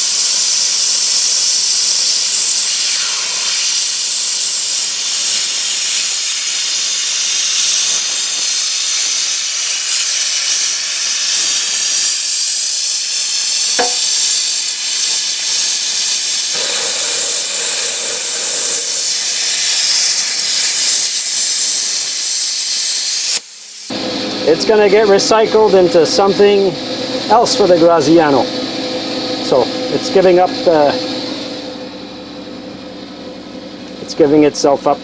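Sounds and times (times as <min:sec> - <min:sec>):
plasma cutter hissing: 0:00.0 - 0:26.7.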